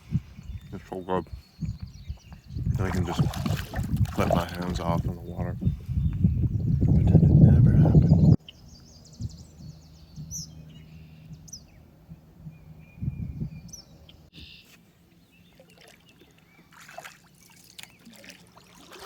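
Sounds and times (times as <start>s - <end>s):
small birds chirping: 0.0s - 18.3s
water splashing: 2.7s - 5.4s, 15.5s - 19.0s.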